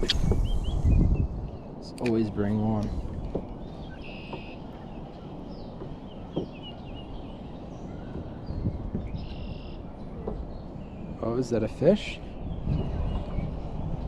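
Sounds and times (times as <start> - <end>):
wild birds chirping and trilling: 0.0 - 14.0.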